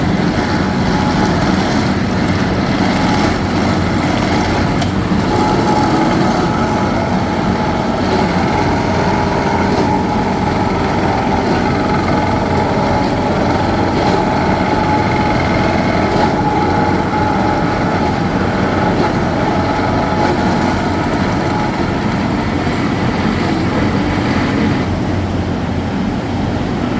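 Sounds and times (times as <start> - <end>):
constant machine whine: 0.0 - 26.9
drilling rig engine drone: 0.0 - 26.9.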